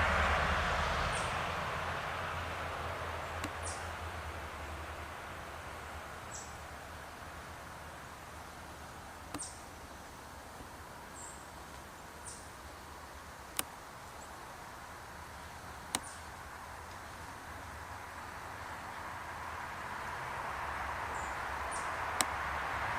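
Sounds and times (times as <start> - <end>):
steady outdoor hiss: 0.0 - 22.9
small bird chirping: 3.2 - 4.0, 5.8 - 6.7, 7.9 - 9.9, 10.6 - 14.5, 15.3 - 16.4
sharp clicks: 3.4 - 3.8, 9.2 - 9.8, 13.4 - 14.2, 15.8 - 16.3.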